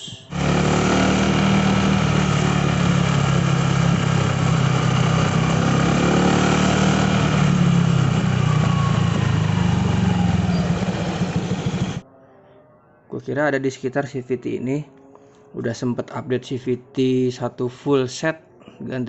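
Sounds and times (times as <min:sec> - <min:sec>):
scooter engine running: 0:00.3 - 0:12.0.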